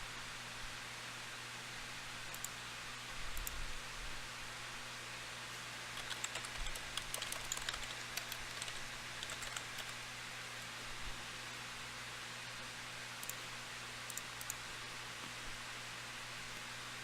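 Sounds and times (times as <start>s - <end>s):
steady background hiss: 0.0s - 17.0s
typing on computer keyboard: 6.0s - 10.0s.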